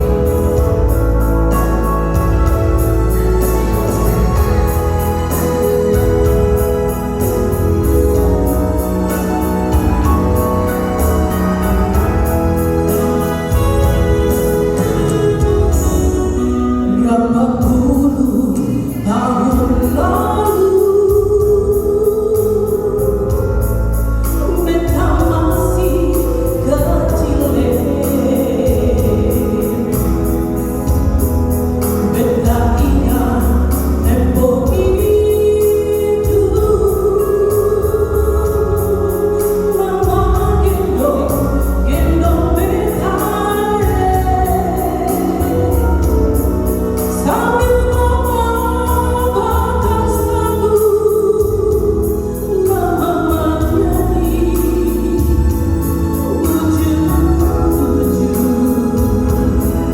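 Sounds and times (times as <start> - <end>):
woman singing: 0.0 - 31.0, 31.8 - 59.9
instrumental backing with bass: 0.0 - 59.9.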